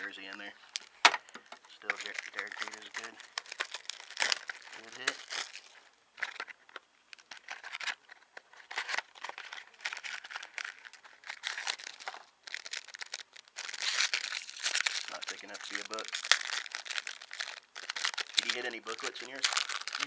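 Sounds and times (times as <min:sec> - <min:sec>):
packaging crinkling and rustling: 0:00.0 - 0:20.0.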